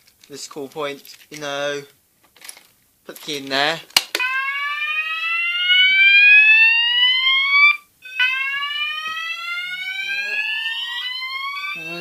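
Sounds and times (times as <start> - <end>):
fire alarm whoop tone: 4.2 - 12.0.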